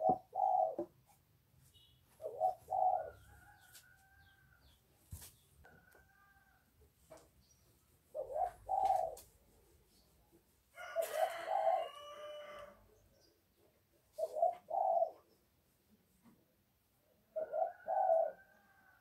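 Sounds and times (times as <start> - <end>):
birds calling: 0.0 - 0.9, 1.6 - 4.8, 7.4 - 9.2, 14.2 - 15.3.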